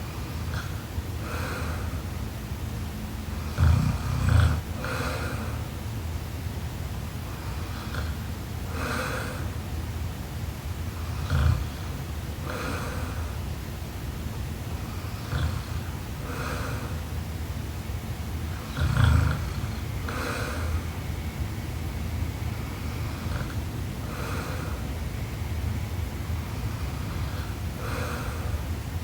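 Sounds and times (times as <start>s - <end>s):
breathy breaths: 0.0s - 2.2s, 3.3s - 5.8s, 7.1s - 9.6s, 10.9s - 13.6s, 14.6s - 17.2s, 18.4s - 21.4s, 22.1s - 29.0s
steady low hum: 0.0s - 29.0s
woman snoring: 3.4s - 5.7s, 11.1s - 13.4s, 15.1s - 17.0s, 18.5s - 20.9s, 26.6s - 28.7s.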